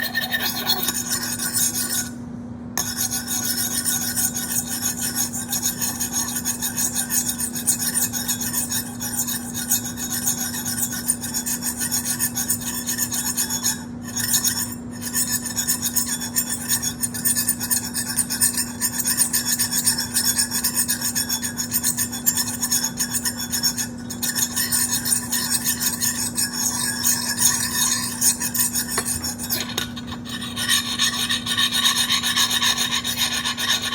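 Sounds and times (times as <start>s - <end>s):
fast scratchy scraping: 0.0s - 2.1s, 22.3s - 33.9s.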